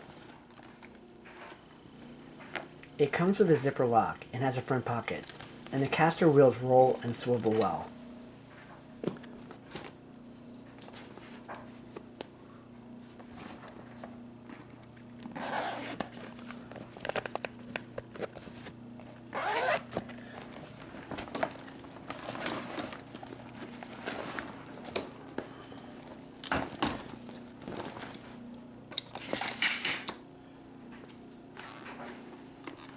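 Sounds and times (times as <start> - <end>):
steady low hum: 0.0 - 32.9
handling clicks and rustles: 13.1 - 29.8
suitcase zipper being pulled: 15.3 - 16.2, 19.3 - 20.0.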